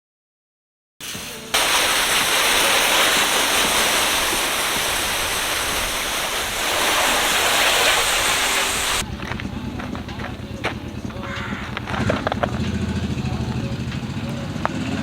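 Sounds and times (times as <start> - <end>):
loud rushing hiss: 1.0 - 9.0.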